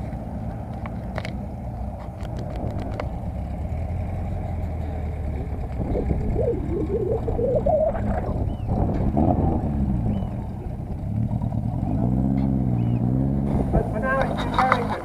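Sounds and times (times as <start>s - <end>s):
car engine rumbling: 0.0s - 15.0s.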